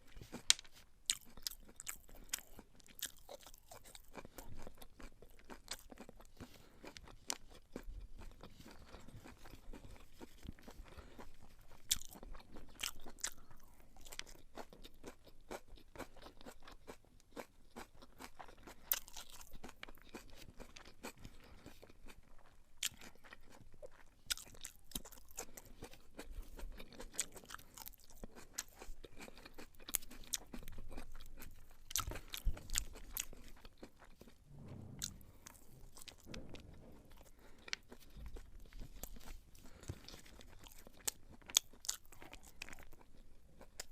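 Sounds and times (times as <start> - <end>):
chewing rice with crunches: 0.0 - 43.9
soft thumps: 34.4 - 37.4.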